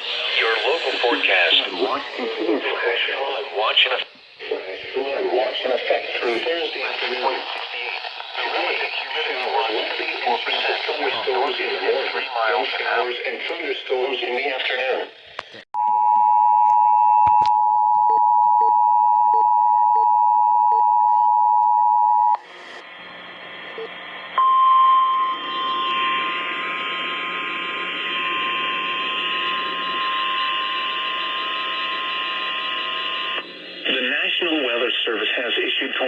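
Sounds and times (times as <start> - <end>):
radio hiss: 0.0 - 15.6, 22.4 - 24.4, 25.2 - 36.0
loud steady dual alert tone: 21.7 - 34.9.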